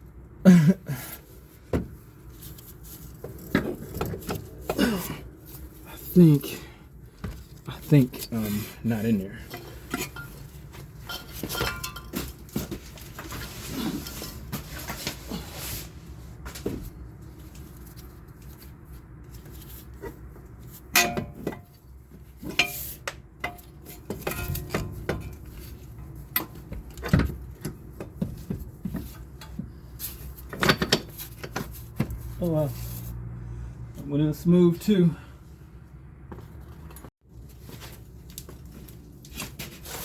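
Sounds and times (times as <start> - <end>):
metal clinks and knocks: 9.5 - 13.1, 22.4 - 32.2.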